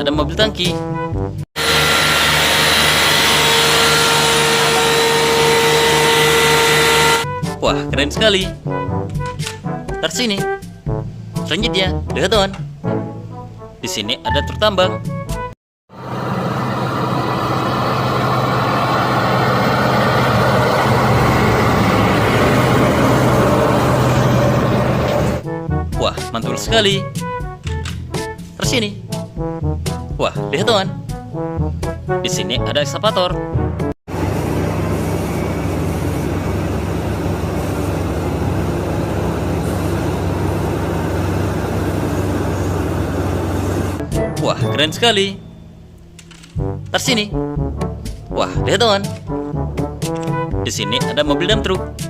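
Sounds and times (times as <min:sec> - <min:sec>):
truck engine running: 0:01.6 - 0:07.4, 0:15.9 - 0:25.6, 0:34.1 - 0:44.1.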